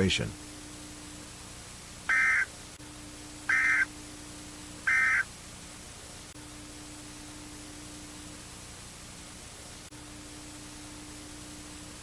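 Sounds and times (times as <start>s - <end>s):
low hum and hiss: 0.0s - 12.0s
electronic data bursts: 2.1s - 2.5s, 3.5s - 3.9s, 4.8s - 5.3s.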